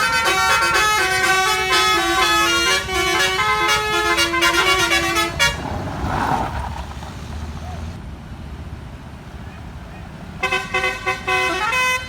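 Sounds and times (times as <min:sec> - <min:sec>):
musical bus horn melody: 0:00.0 - 0:05.9, 0:10.4 - 0:12.0.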